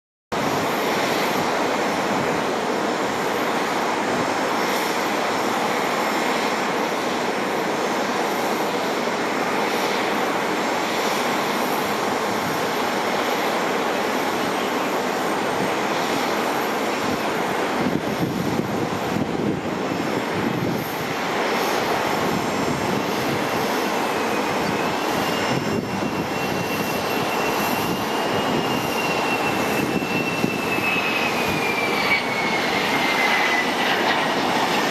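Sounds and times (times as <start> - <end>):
loud jet roar: 0.4 - 34.9
thin high whine: 23.4 - 34.9.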